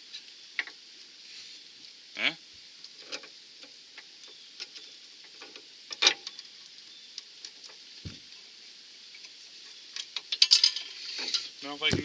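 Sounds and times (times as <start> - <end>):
dull thump: 8.0 - 8.2.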